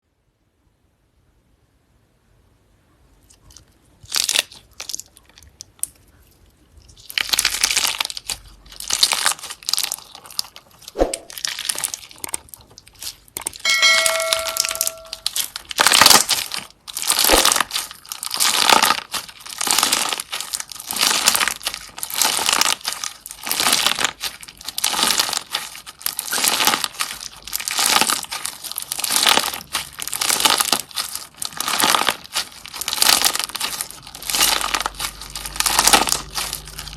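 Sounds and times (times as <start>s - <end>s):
slime squishing: 3.2s - 36.9s.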